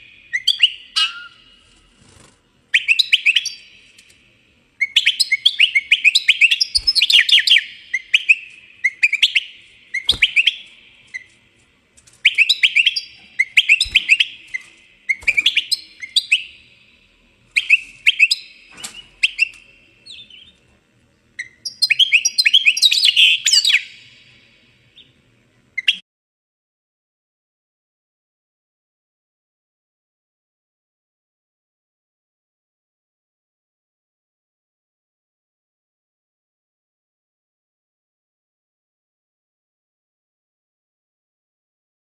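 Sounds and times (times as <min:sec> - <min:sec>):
small birds chirping: 0:00.0 - 0:01.8, 0:02.7 - 0:04.1, 0:04.8 - 0:11.4, 0:12.2 - 0:20.6, 0:21.4 - 0:25.2.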